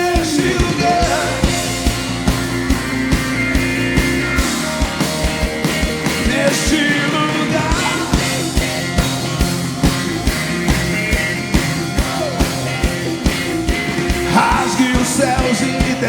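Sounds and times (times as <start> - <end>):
person singing: 0.0 - 2.0, 4.3 - 8.6, 14.0 - 16.0
live band playing rock groove: 0.0 - 16.0.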